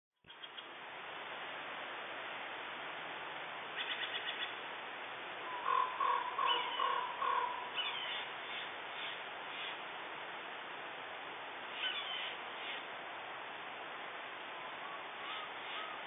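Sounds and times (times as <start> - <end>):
steady hiss: 0.3 - 16.0
jays calling: 3.8 - 4.6, 5.5 - 9.8, 11.8 - 12.8, 15.2 - 16.0.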